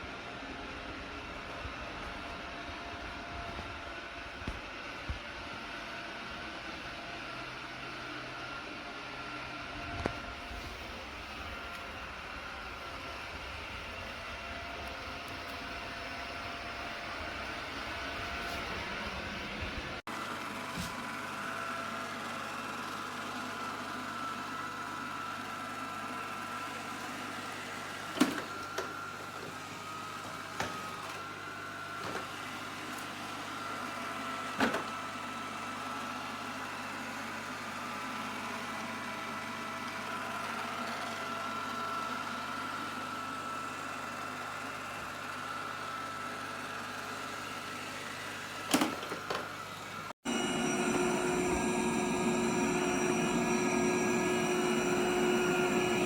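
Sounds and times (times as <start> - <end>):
robot vacuum motor whine: 45.0 - 56.0.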